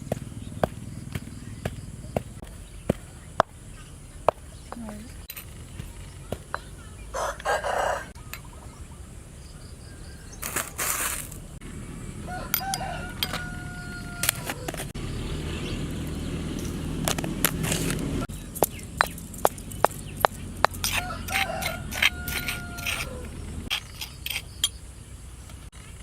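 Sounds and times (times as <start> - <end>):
rooster crowing: 7.1 - 8.2, 12.2 - 14.9, 20.8 - 23.7
sharp knocks and clicks: 16.6 - 23.0.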